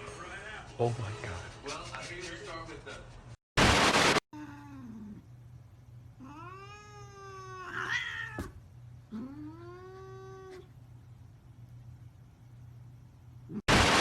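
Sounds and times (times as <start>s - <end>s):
cat meowing: 6.2s - 10.7s.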